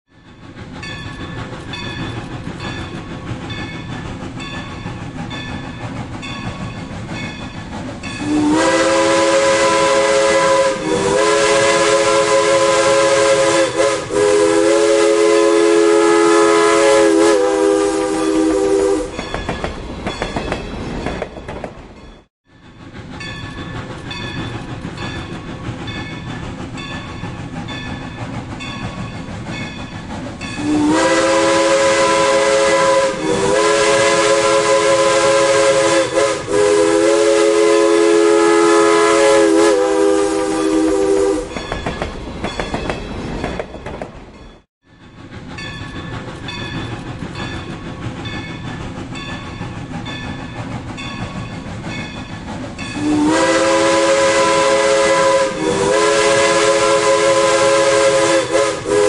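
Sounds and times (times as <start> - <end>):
steam locomotive chuffing: 0.1 - 59.0
steam locomotive whistle: 8.2 - 19.4, 30.5 - 41.8, 52.9 - 59.0.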